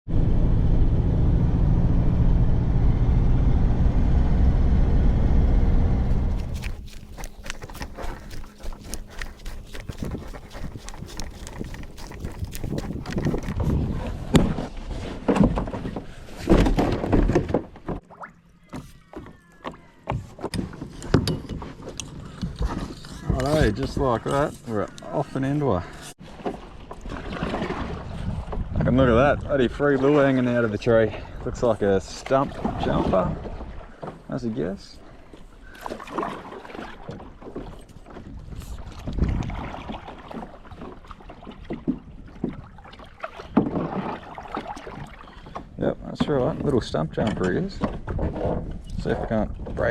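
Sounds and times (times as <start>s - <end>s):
kayak knocking: 6.1s - 13.8s, 40.1s - 48.9s
paddle splashing and knocking: 6.1s - 24.7s, 26.2s - 29.0s, 35.3s - 49.9s.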